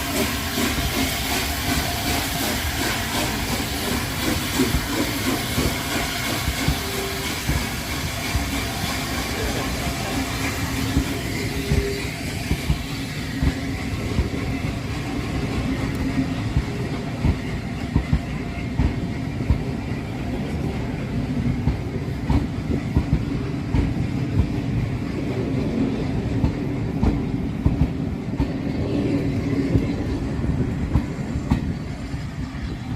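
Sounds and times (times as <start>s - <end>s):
steam hiss: 0.0s - 25.4s
steam train rumbling: 0.0s - 32.9s.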